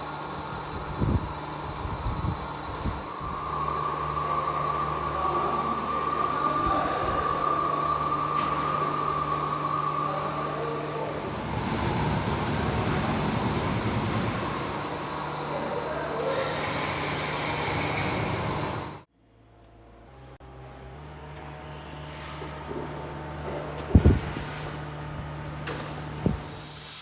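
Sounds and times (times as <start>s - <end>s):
machinery motor hum: 0.0s - 19.1s.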